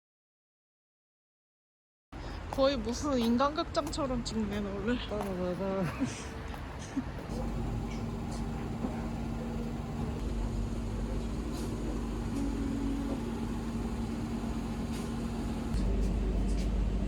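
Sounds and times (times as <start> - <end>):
low mechanical hum: 6.9 - 17.0.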